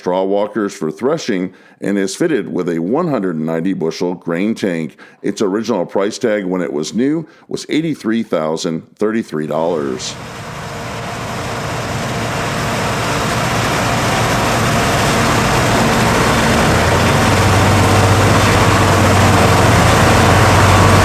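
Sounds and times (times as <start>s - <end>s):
combine harvester engine drone: 10.0s - 21.0s.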